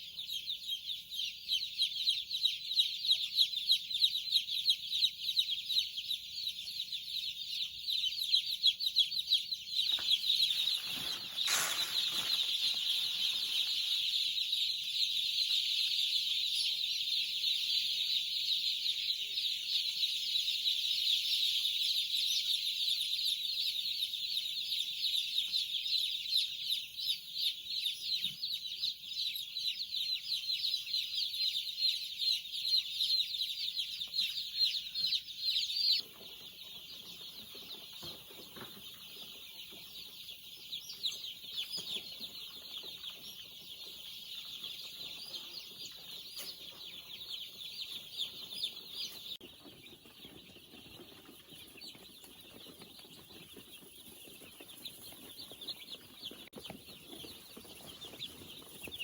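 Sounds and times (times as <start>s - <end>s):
chicks peeping: 0.0s - 59.0s
rustling: 9.9s - 14.3s.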